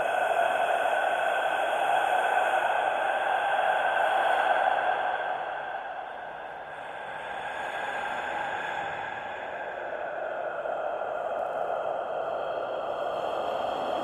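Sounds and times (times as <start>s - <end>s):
breathy whisper: 0.0s - 14.0s.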